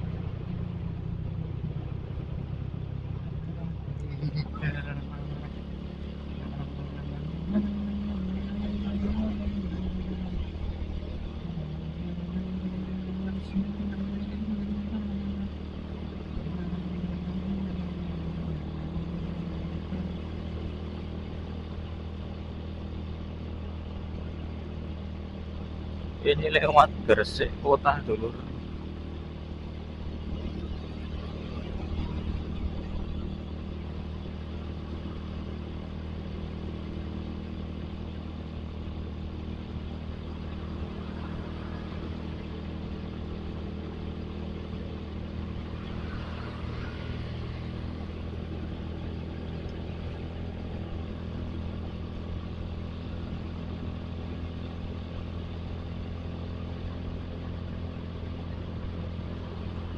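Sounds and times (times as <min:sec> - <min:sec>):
motorcycle engine running: 0:00.0 - 0:59.9
road and traffic noise: 0:00.0 - 0:59.9.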